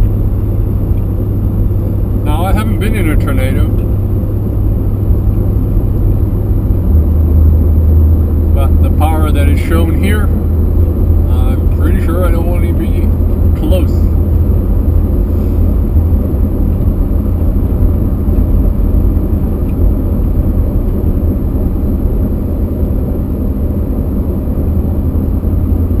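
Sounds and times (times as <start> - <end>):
car engine and road noise: 0.0 - 26.0.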